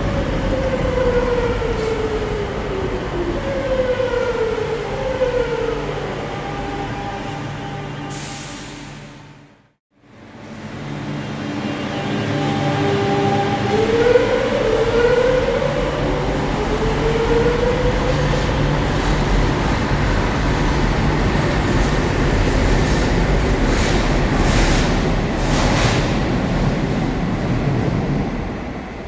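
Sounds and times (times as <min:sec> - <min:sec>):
wheels rumbling on track: 0:00.0 - 0:08.3, 0:09.0 - 0:29.0
electric train hum: 0:00.0 - 0:29.0
train rattles: 0:10.4 - 0:29.0.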